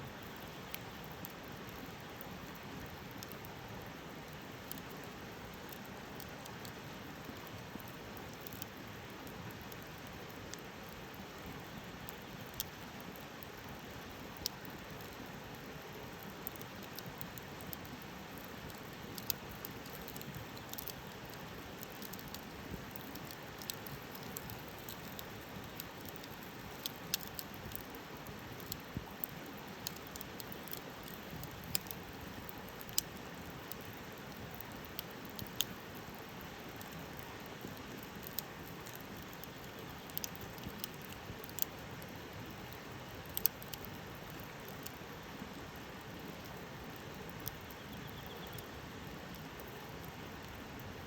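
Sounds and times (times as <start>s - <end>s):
campfire crackling and hissing: 0.0s - 51.0s.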